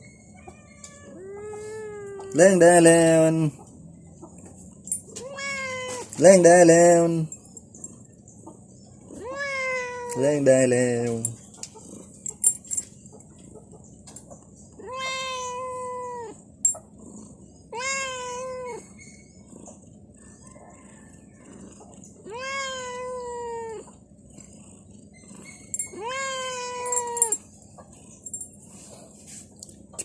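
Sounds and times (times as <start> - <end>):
cat meowing: 5.1 - 6.2, 9.1 - 10.2, 14.8 - 16.4, 17.7 - 18.9, 22.2 - 23.9, 25.9 - 27.4.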